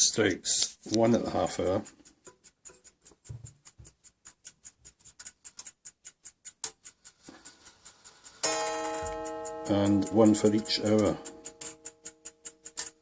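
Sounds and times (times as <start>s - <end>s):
clock ticking fast: 0.0s - 13.0s.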